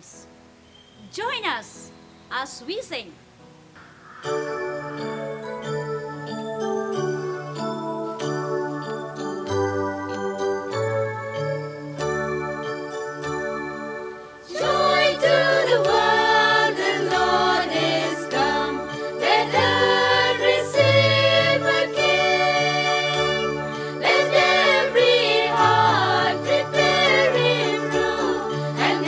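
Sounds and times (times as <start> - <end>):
group singing a christmas carol: 14.4 - 29.0
group of voices singing: 14.5 - 29.0.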